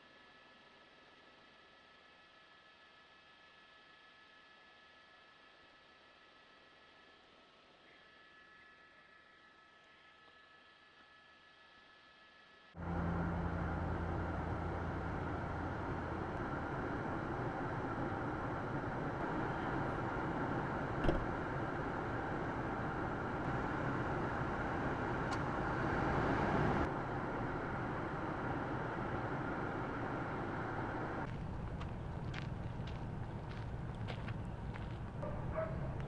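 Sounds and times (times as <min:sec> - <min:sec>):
car road and engine noise: 0:12.8 - 0:36.0.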